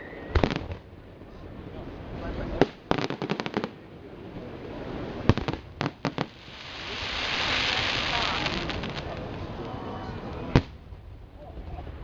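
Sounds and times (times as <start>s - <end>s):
crackling hiss of fireworks: 0.3s - 1.4s, 2.0s - 12.0s
firework bangs: 2.6s - 3.8s, 5.2s - 9.8s, 10.4s - 10.9s
fireworks cracking: 2.6s - 3.9s, 5.2s - 10.9s.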